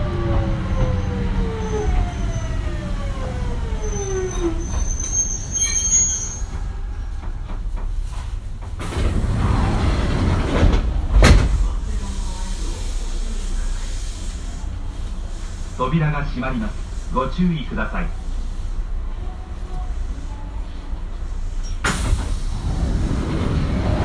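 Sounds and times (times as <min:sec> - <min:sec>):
train motors whining: 0:00.0 - 0:15.8
hiss: 0:11.2 - 0:17.4, 0:21.4 - 0:24.0.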